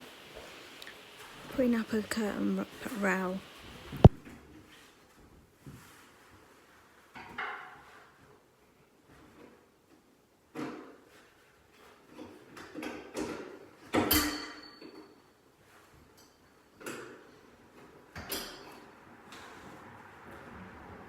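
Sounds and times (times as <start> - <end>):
curtain pole knocks and clatters: 7.1 - 8.3.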